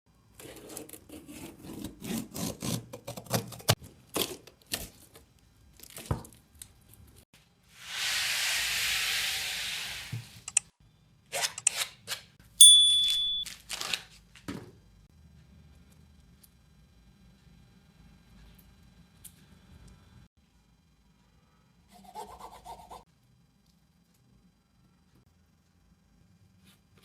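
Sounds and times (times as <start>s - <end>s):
short high beep: 12.6s - 13.4s.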